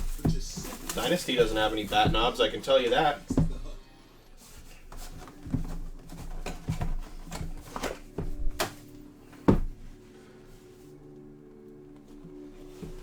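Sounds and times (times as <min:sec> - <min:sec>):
card boxes clicking and knocking: 0:00.0 - 0:03.8, 0:04.5 - 0:09.8
faint background music: 0:00.0 - 0:13.0.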